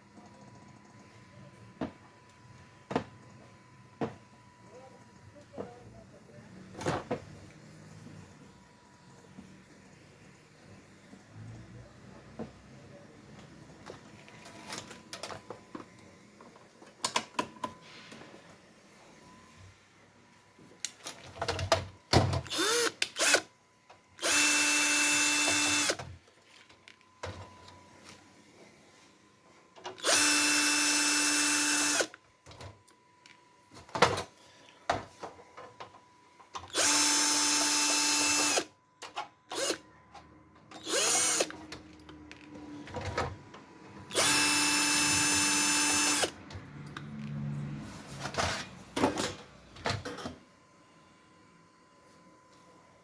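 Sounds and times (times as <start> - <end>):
electric screwdriver motor running: 22.5 - 23.5, 24.2 - 26.0, 30.0 - 32.1, 36.7 - 38.7, 39.5 - 39.8, 40.8 - 41.5, 44.1 - 46.3.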